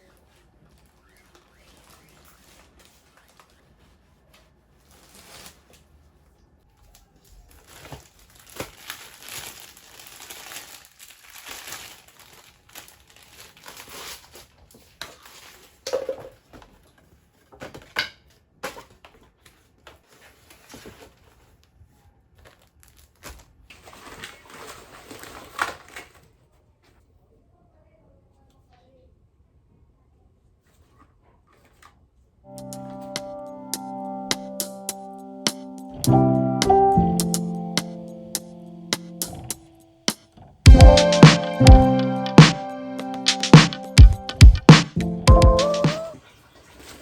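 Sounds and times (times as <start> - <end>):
rustling and crinkling: 0.0 - 27.1, 46.0 - 47.0.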